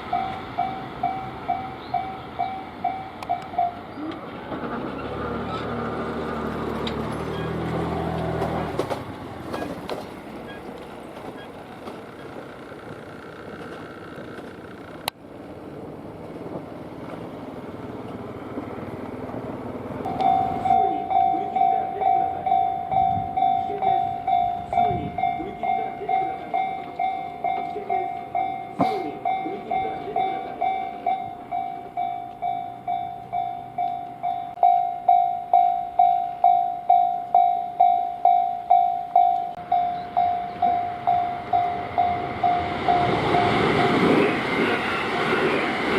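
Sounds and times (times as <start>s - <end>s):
level crossing warning bell: 0.0s - 4.0s, 20.0s - 45.9s
electric train rumble: 0.0s - 45.9s.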